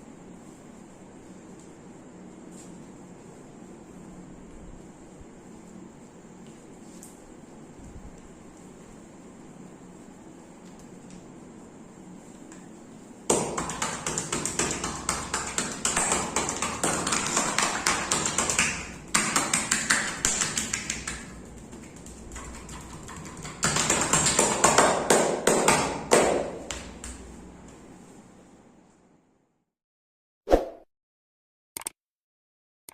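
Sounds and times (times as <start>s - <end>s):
hands slapping bare skin: 13.3s - 27.3s.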